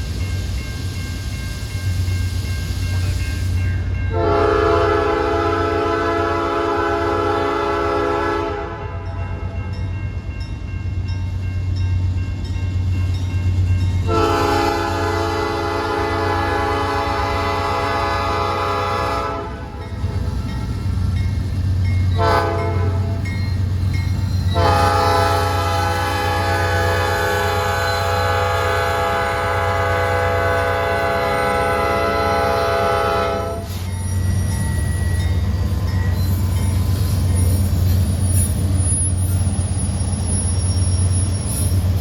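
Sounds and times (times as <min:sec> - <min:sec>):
locomotive engines droning: 0:00.0 - 0:42.0
locomotive air horn: 0:04.1 - 0:09.0, 0:14.1 - 0:19.7, 0:22.2 - 0:23.2, 0:24.6 - 0:33.8.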